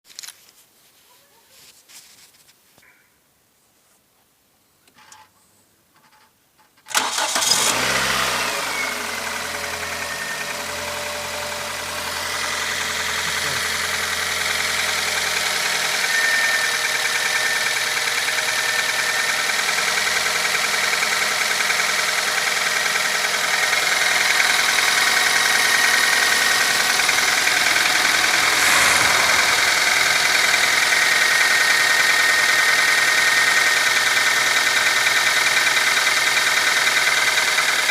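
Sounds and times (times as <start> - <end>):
car engine starting and idling: 6.9 - 37.9.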